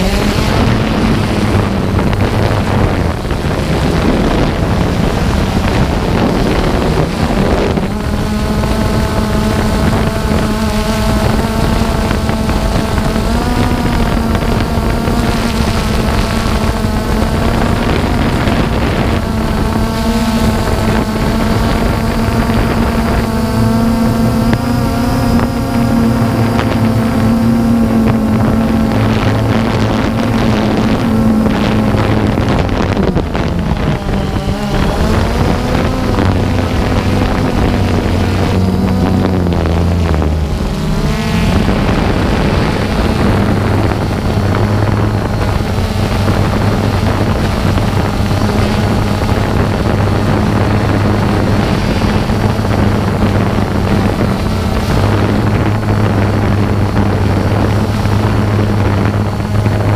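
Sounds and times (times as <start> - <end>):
drone propellers droning: 0.0 - 59.9
wind on microphone: 0.0 - 59.9.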